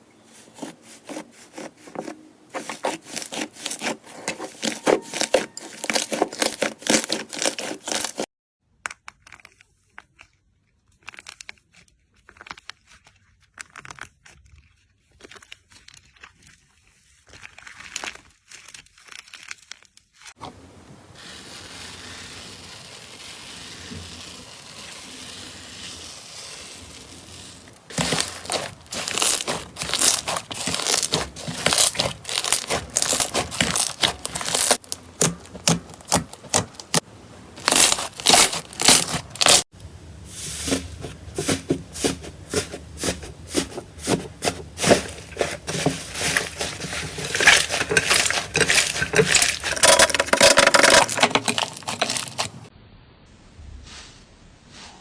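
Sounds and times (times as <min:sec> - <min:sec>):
slime rustling: 0:00.0 - 0:08.3, 0:09.4 - 0:20.3, 0:20.9 - 0:52.7
slime crackling and popping: 0:04.6 - 0:08.2, 0:17.2 - 0:20.3, 0:21.6 - 0:37.0, 0:37.6 - 0:39.7.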